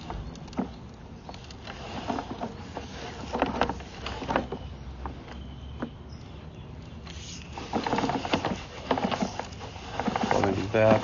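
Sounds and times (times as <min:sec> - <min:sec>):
cable knocking and clattering: 0:07.6 - 0:11.0.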